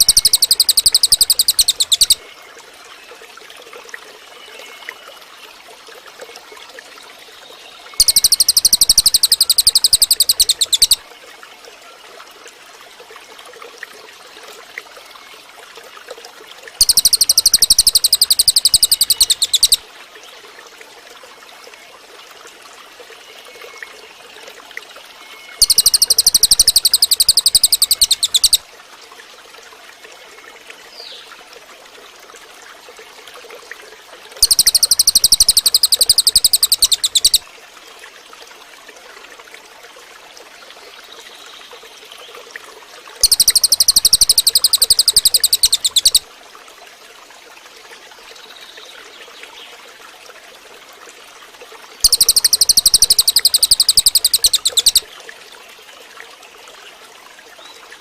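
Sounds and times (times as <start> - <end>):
bird trilling rapidly: 0.0 - 2.2, 8.0 - 11.0, 16.8 - 19.8, 25.6 - 28.6, 34.4 - 37.4, 43.2 - 46.2, 52.0 - 55.0.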